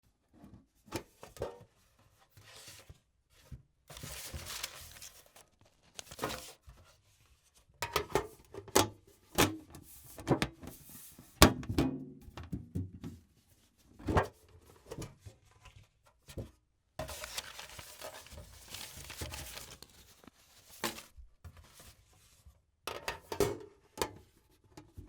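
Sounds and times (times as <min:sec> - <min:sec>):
paper rustling: 0:03.9 - 0:06.8, 0:17.0 - 0:21.8.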